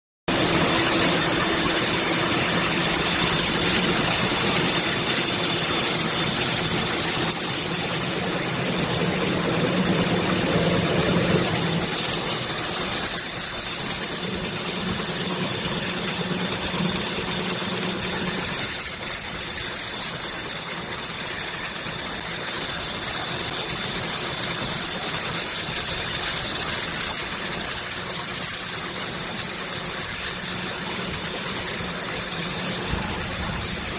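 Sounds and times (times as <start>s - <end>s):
faint high whine: 0.3s - 13.4s
machine whirring: 0.3s - 33.9s.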